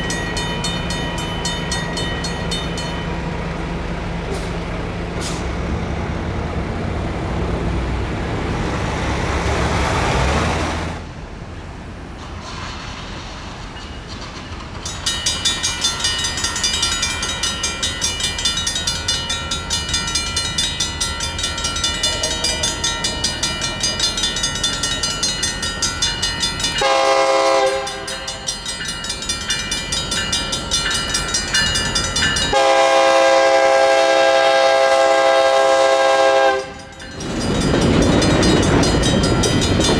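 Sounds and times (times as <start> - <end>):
railroad crossing bell ringing: 0.0 - 6.4, 13.8 - 39.9
train rumbling past: 0.0 - 39.9
locomotive horn blast: 26.8 - 28.5, 32.5 - 36.9.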